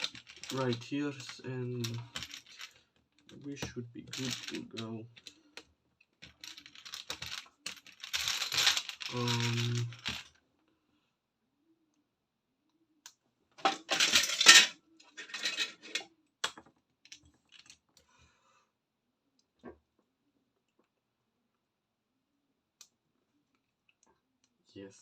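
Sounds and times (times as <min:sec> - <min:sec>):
plastic bricks rattling and clicking: 0:00.0 - 0:10.3, 0:13.6 - 0:17.8.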